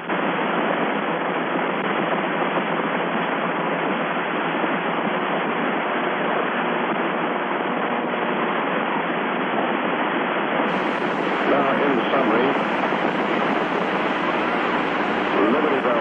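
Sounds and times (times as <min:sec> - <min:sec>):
radio static hiss: 0:10.6 - 0:16.0.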